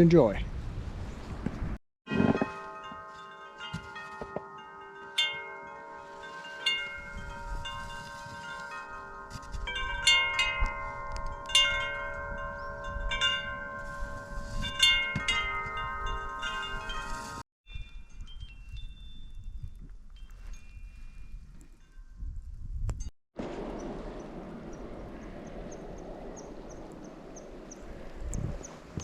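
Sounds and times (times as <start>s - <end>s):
low rumble of wind: 0.0s - 2.6s, 5.9s - 29.0s
wind chimes ringing: 2.1s - 22.1s.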